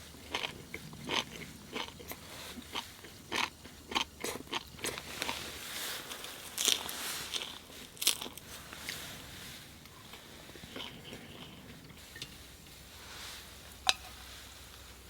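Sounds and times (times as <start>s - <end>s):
chewing food crunching: 0.0s - 9.0s, 9.8s - 12.0s.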